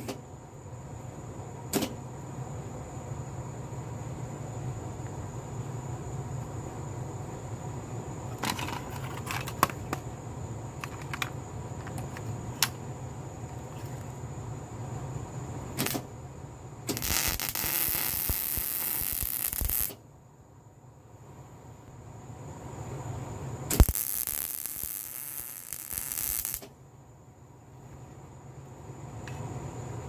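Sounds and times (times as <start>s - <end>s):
sizzling weld bead: 15.8s - 16.0s, 16.9s - 20.0s, 23.7s - 26.7s
welding crackles and clicks: 15.8s - 16.0s, 16.9s - 20.0s, 23.7s - 26.7s
low welder hum: 16.8s - 20.0s, 22.8s - 26.7s.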